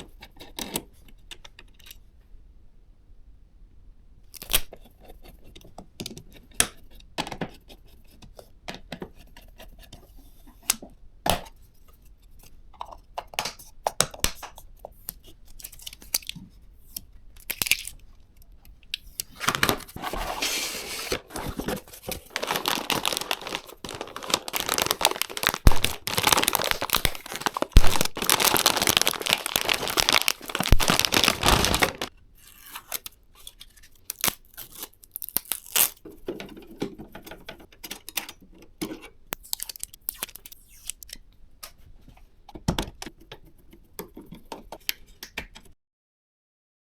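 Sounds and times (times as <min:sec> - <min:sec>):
packaging crinkling and tearing: 0:17.4 - 0:18.0, 0:19.1 - 0:36.0, 0:39.4 - 0:41.1.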